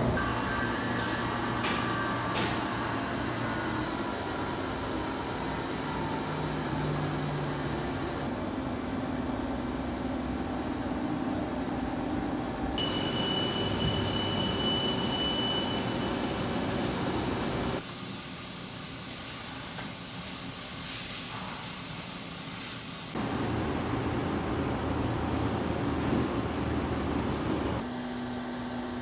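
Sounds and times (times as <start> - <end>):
high machine whine: 12.8 - 17.8
loud steady hiss: 12.8 - 23.2.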